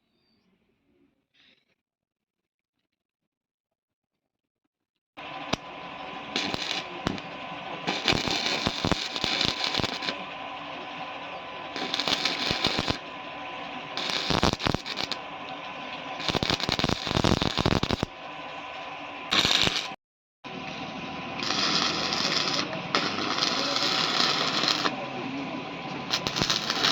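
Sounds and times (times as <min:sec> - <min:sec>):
arc welding crackling: 0:05.2 - 0:20.0, 0:21.2 - 0:25.0, 0:26.0 - 0:26.9.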